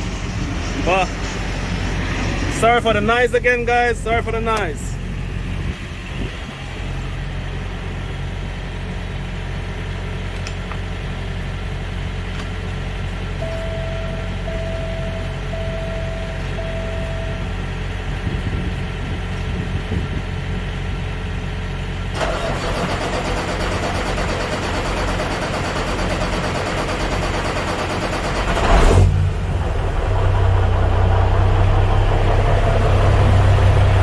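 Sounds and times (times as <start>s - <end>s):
diesel truck engine running: 0.0s - 34.0s
short beeps: 13.4s - 17.5s.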